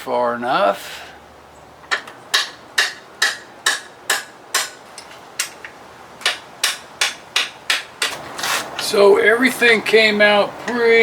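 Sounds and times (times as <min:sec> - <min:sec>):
rubber mallet striking metal: 0:01.9 - 0:04.8, 0:06.2 - 0:08.2.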